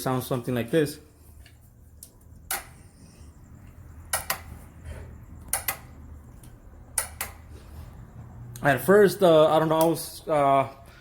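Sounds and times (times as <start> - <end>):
starter relay clicking: 5.5 - 7.5.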